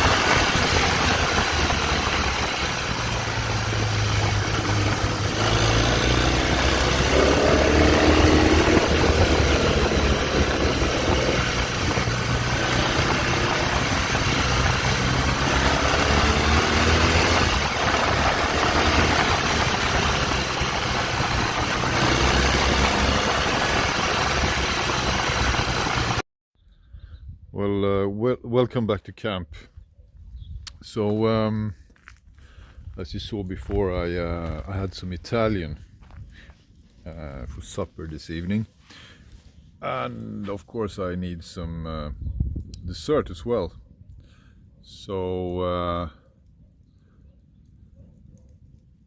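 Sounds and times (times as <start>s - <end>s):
wind rush: 0.0s - 25.0s
motorcycle engine running: 0.0s - 26.2s.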